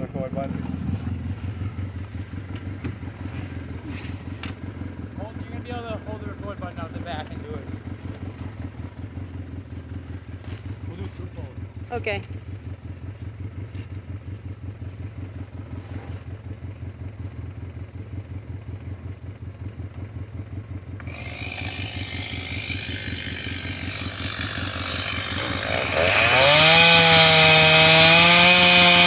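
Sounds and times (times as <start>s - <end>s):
small engine idling: 0.0s - 29.0s
chainsaw revving and cutting wood: 21.0s - 29.0s.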